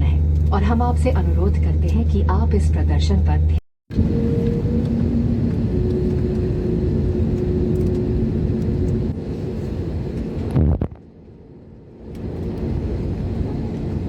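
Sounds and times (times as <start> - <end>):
airliner engine rumble: 0.0 - 14.0
engine whining tones: 0.2 - 10.4.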